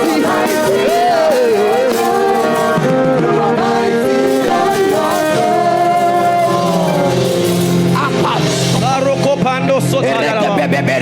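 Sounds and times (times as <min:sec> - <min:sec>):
band accompaniment: 0:00.0 - 0:11.0
person singing worship music: 0:00.0 - 0:11.0.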